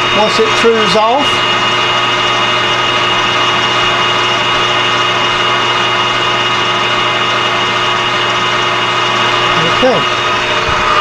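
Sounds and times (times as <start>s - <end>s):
metal lathe running: 0.0s - 11.0s.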